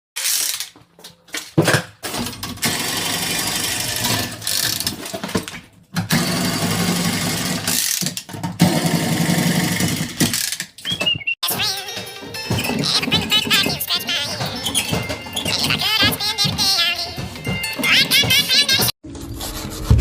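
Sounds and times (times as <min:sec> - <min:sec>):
power tool running: 0:02.6 - 0:04.9, 0:06.1 - 0:10.4.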